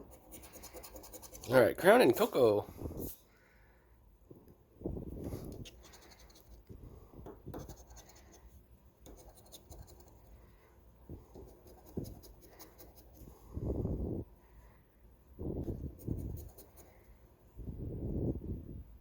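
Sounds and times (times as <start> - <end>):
scratching lottery ticket: 0.0 - 2.4, 9.1 - 10.3, 11.3 - 13.3, 15.9 - 17.0.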